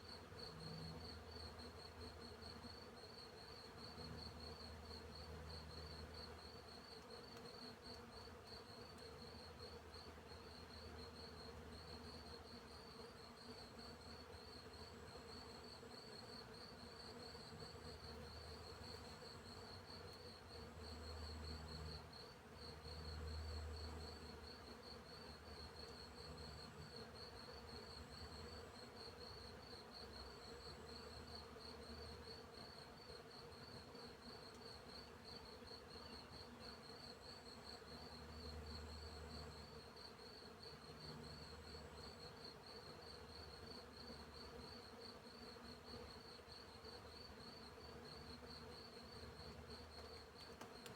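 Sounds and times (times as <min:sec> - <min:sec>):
crickets chirping: 0:14.1 - 0:50.9.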